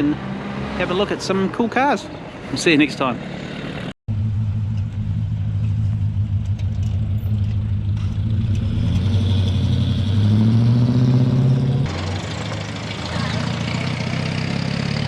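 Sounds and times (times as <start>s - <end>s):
car engine revving: 3.3s - 15.0s.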